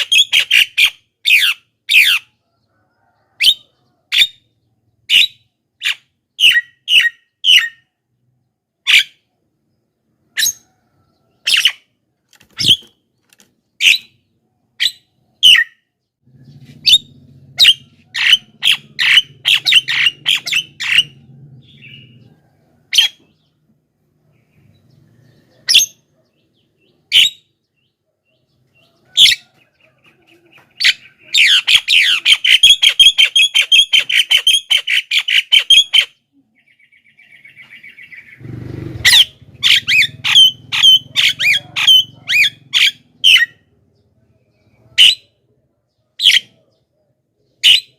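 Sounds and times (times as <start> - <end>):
myna chattering calls: 37.4 - 43.5.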